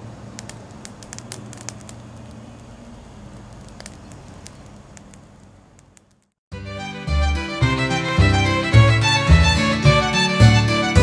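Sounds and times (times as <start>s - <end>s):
campfire crackling and popping: 0.0s - 6.4s.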